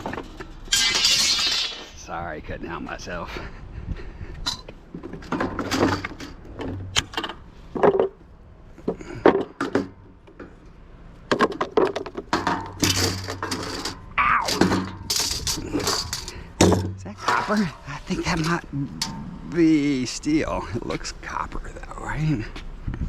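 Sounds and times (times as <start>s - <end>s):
scrap metal clanking: 0.0s - 2.0s, 4.5s - 8.2s, 11.4s - 19.6s.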